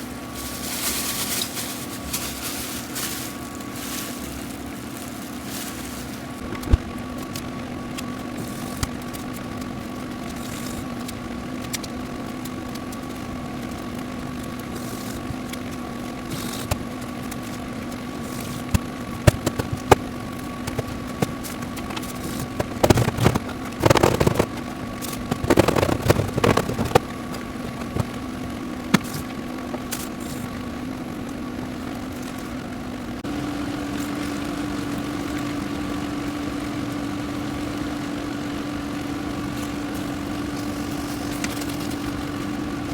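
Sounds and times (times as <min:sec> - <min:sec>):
mechanical hum: 0:00.0 - 0:42.9
bursts of clatter: 0:14.7 - 0:30.4.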